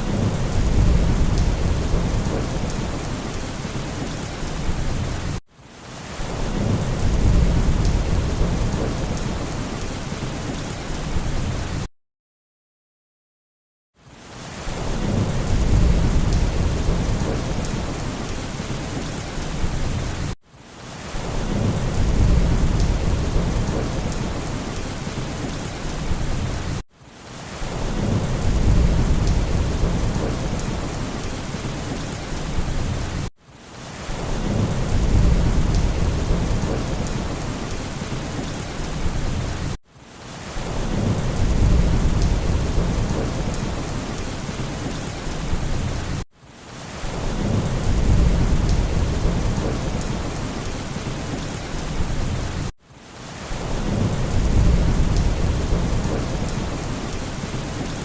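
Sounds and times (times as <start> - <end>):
low rolling thunder: 0.0 - 5.3, 6.3 - 9.8, 14.8 - 18.5, 21.2 - 24.8, 27.7 - 33.3, 34.2 - 39.8, 40.6 - 46.2, 47.2 - 50.8, 53.6 - 57.2
steady rain: 0.0 - 11.9, 14.0 - 58.0.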